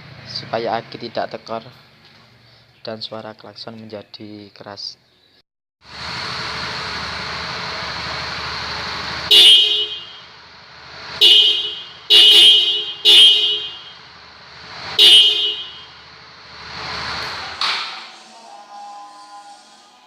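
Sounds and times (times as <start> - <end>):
motorcycle horn honks: 9.3 - 10.3, 11.2 - 14.0, 15.0 - 16.0.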